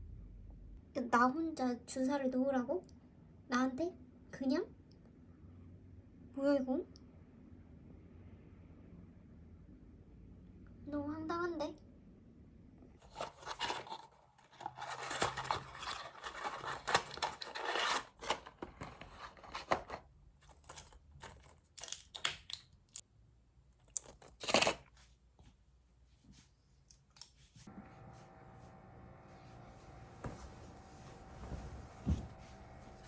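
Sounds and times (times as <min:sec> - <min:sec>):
packaging crinkling and tearing: 0:13.0 - 0:22.7, 0:23.8 - 0:24.9.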